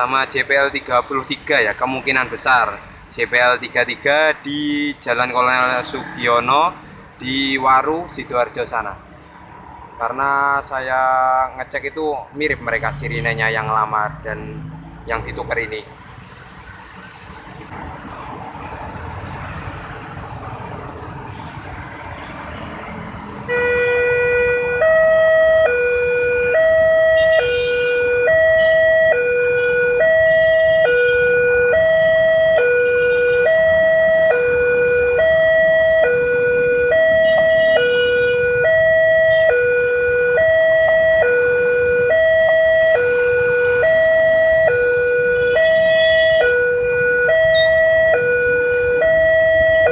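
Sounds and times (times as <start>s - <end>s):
road traffic hiss: 15.4s - 24.1s
two-tone warning siren: 22.1s - 49.9s.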